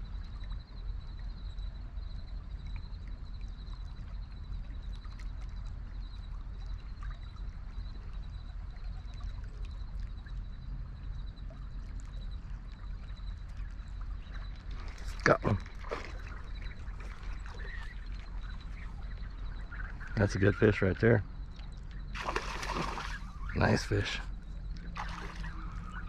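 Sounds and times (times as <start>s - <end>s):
river water running: 13.4s - 26.0s.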